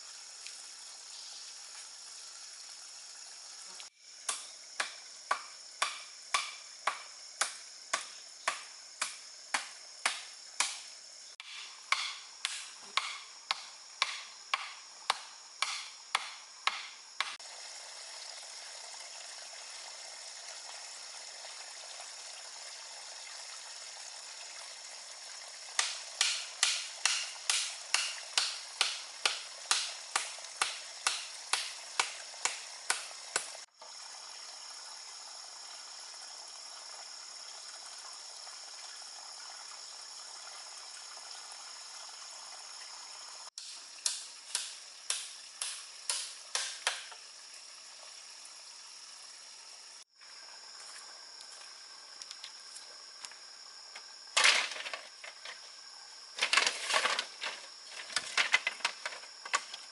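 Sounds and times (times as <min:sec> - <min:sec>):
stream hissing: 0:00.0 - 0:59.9
sharp tool strikes: 0:04.3 - 0:17.4, 0:25.8 - 0:33.5, 0:43.6 - 0:47.1.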